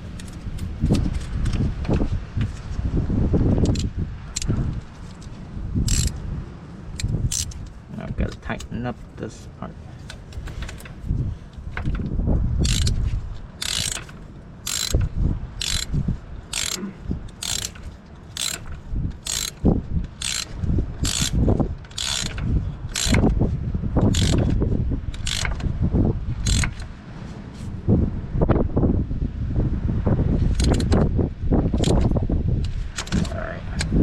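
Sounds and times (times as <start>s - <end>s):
ratchet wrench clicking: 3.6s - 4.5s, 5.1s - 6.2s, 7.0s - 8.7s, 12.6s - 13.0s, 13.6s - 23.3s, 24.0s - 25.6s, 26.4s - 26.9s, 30.5s - 31.1s, 31.8s - 33.3s.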